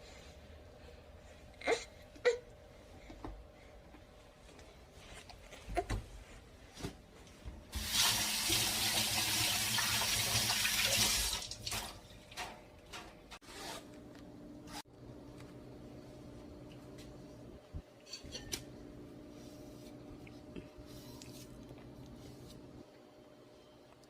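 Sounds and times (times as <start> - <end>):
kitchen tap water running: 7.7 - 12.5.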